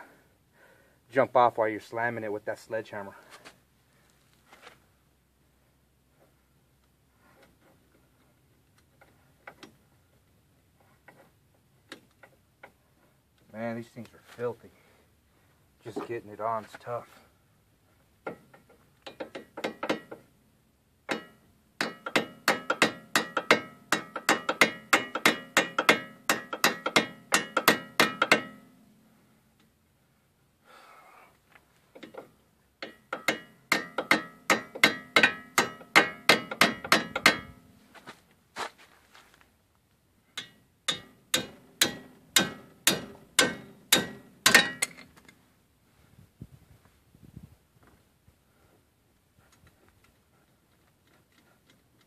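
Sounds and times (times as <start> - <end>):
hammer striking steel socket: 21.1 - 28.7, 32.8 - 37.7, 40.4 - 45.2.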